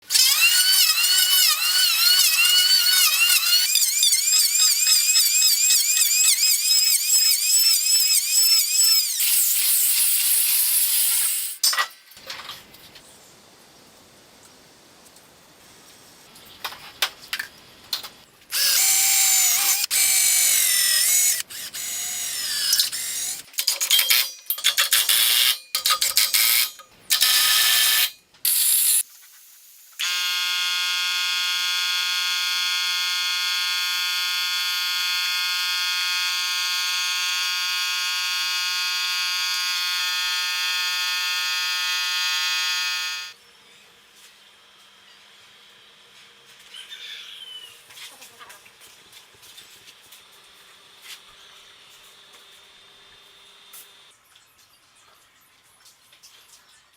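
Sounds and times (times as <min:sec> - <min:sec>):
power tool motor bursts: 0:00.0 - 0:11.6, 0:18.5 - 0:24.2, 0:24.8 - 0:25.6, 0:26.2 - 0:29.0, 0:30.0 - 0:43.4
high-pitched tool whine: 0:00.1 - 0:11.6, 0:18.5 - 0:23.5, 0:26.3 - 0:29.0, 0:30.0 - 0:46.6.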